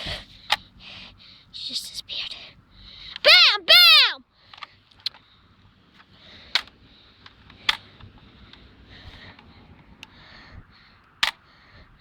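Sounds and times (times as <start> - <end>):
sharp mechanical clicks: 6.0 - 8.7, 11.0 - 11.5.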